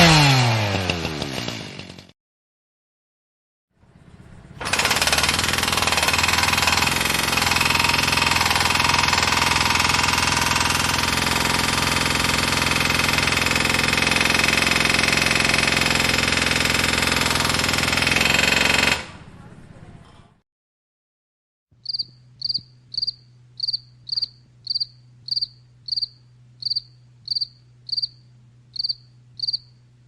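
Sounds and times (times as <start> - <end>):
machine with pulsing rattle: 3.8 - 19.3.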